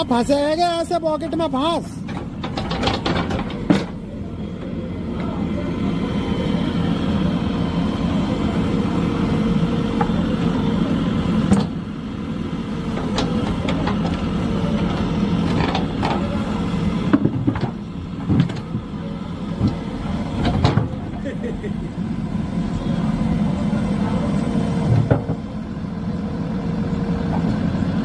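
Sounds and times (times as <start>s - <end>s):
diesel engine running: 0.0s - 28.0s
sharp metal knocks and clanks: 2.1s - 4.0s.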